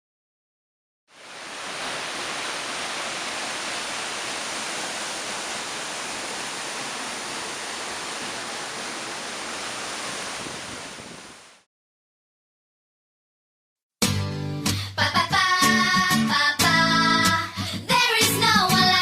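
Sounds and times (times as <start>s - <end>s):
waterfall roar: 1.1s - 11.6s.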